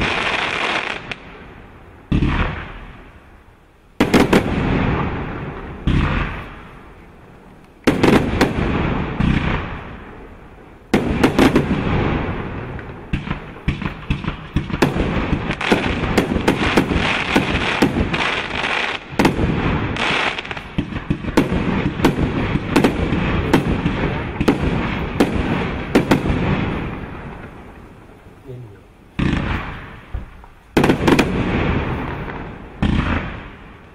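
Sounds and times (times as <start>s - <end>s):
firework cake bangs: 10.9s - 27.2s, 29.2s - 33.8s.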